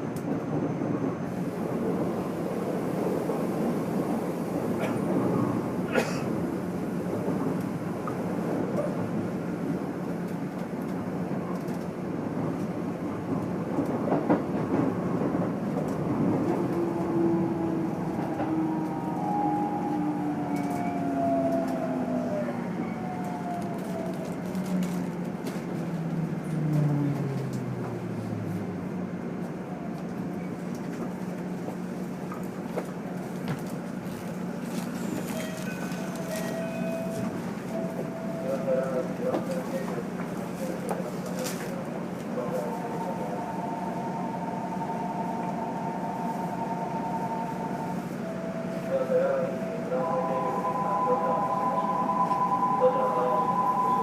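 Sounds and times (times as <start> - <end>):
train running noise: 0.0 - 54.0
rail joint clicks: 0.1 - 1.1, 4.8 - 28.3, 29.2 - 42.4.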